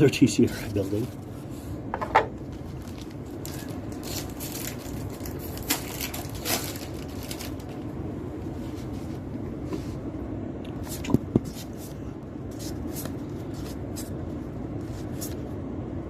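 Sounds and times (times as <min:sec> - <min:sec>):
low background hum: 0:00.0 - 0:16.0
cards and packaging rustling: 0:00.5 - 0:01.2, 0:02.4 - 0:07.8
packaging crinkling: 0:02.4 - 0:07.9.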